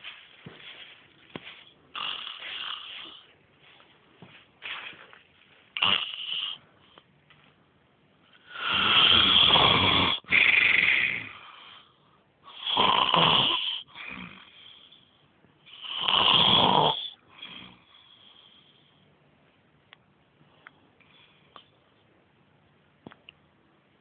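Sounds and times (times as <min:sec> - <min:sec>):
faint breath sounds: 0:00.0 - 0:07.3, 0:08.2 - 0:09.2, 0:10.2 - 0:12.6, 0:13.7 - 0:15.8, 0:17.1 - 0:19.3, 0:20.4 - 0:21.9
loud snoring: 0:01.9 - 0:03.2, 0:05.8 - 0:06.6, 0:08.4 - 0:11.7, 0:12.5 - 0:14.7, 0:15.7 - 0:17.9.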